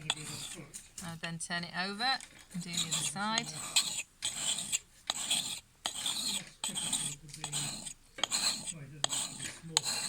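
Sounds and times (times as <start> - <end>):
sharpening stone rasping on axe blade: 0.0 - 0.6, 2.6 - 10.0.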